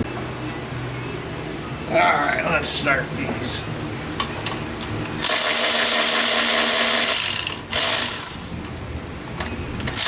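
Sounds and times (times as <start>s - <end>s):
cordless power tool whirring: 5.2s - 8.3s.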